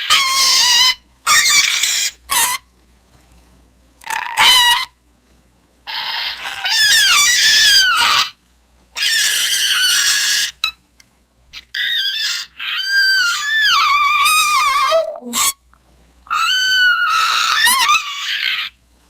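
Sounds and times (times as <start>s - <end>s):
creature squeaks and squeals: 0.0s - 2.7s, 4.0s - 5.0s, 5.9s - 8.4s, 9.0s - 10.8s, 11.6s - 15.6s, 16.3s - 18.8s.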